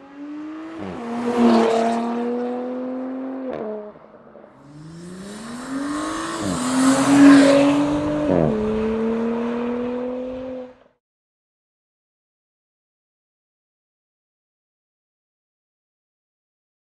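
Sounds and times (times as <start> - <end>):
car engine accelerating: 0.0 - 10.9.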